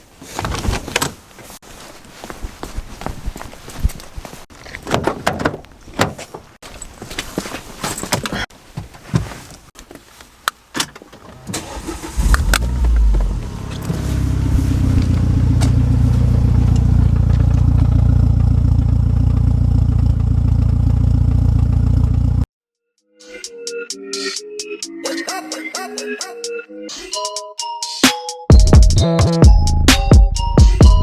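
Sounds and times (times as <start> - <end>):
car engine starting and idling: 10.8 - 22.5.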